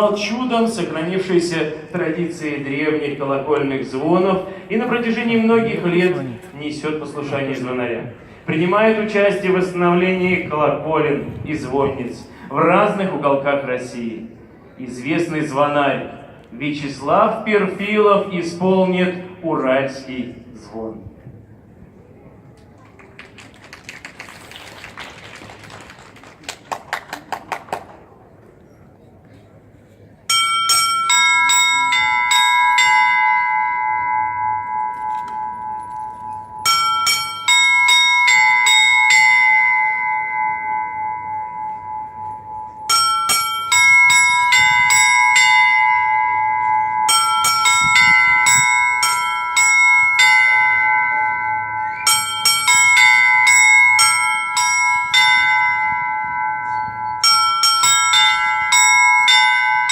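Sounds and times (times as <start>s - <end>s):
church bells ringing: 0.0s - 10.5s, 30.3s - 59.9s.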